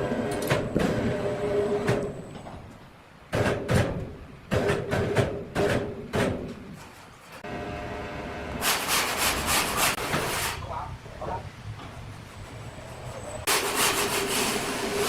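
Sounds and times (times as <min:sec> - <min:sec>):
steady machine hum: 0:07.4 - 0:08.6.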